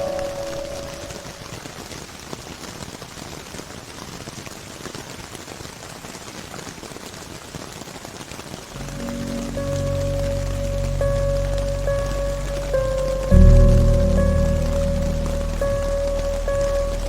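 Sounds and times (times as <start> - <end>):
ambient music held note: 0.0 - 1.6, 8.8 - 17.0
rain pattering: 0.0 - 17.0.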